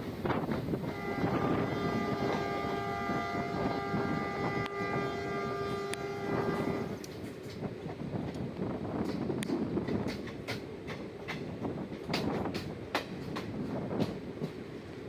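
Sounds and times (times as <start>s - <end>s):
moving train rumble: 0.0s - 15.0s
wind on microphone: 0.0s - 15.0s
locomotive air horn blast: 0.7s - 7.0s.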